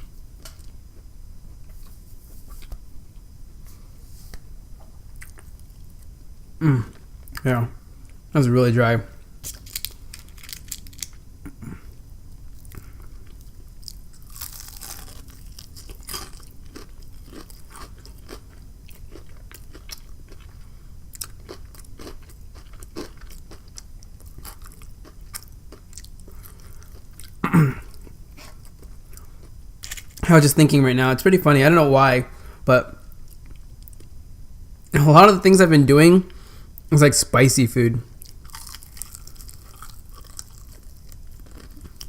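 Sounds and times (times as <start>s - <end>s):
person chewing and crunching food: 0.4s - 3.2s, 4.3s - 7.4s, 9.3s - 30.2s, 38.1s - 42.0s.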